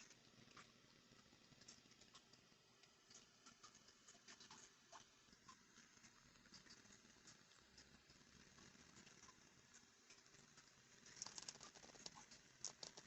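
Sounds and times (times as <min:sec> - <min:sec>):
light clicks and taps: 0:09.0 - 0:13.0.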